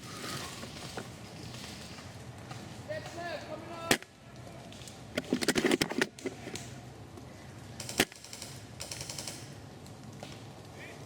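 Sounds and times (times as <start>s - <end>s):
rifle clicks and rattles: 4.8s - 6.7s, 7.8s - 9.6s.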